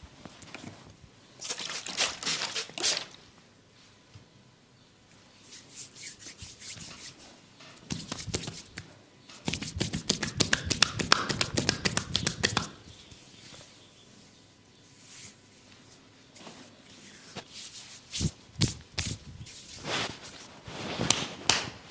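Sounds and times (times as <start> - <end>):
hands slapping skin: 7.9 - 12.8, 18.2 - 19.2, 21.1 - 21.7.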